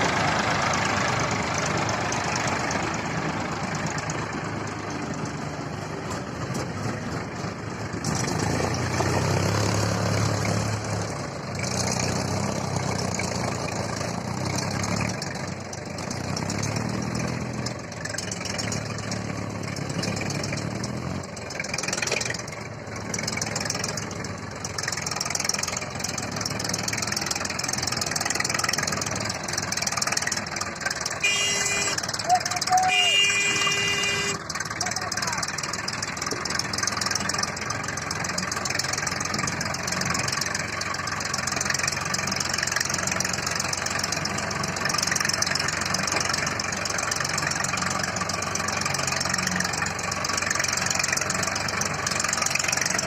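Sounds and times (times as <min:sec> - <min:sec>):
tractor diesel engine running: 0:00.0 - 0:53.0.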